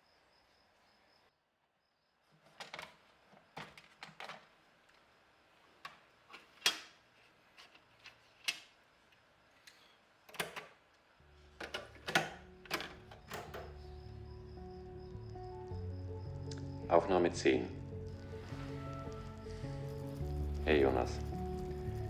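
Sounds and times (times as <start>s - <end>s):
tape playback hum: 10.9s - 22.0s.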